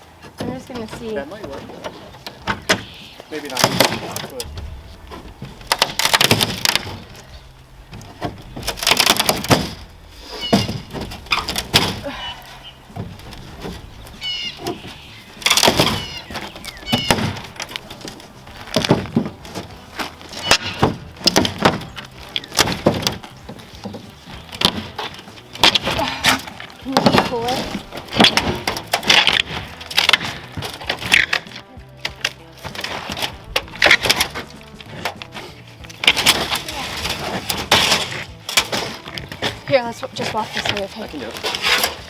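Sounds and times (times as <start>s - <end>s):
wood cracking and crunching: 0.0s - 42.0s
high creaks: 1.7s - 42.0s.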